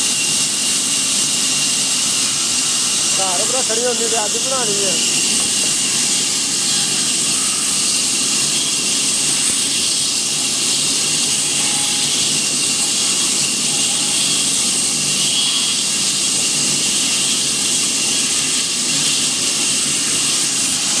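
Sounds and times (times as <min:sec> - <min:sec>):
power saw whirring: 0:00.0 - 0:21.0.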